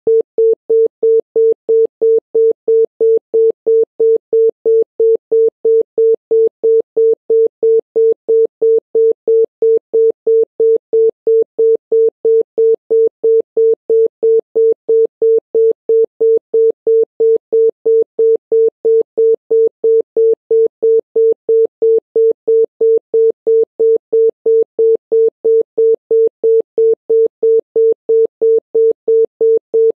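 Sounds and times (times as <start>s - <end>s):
telephone busy tone beeping: 0.1s - 29.9s.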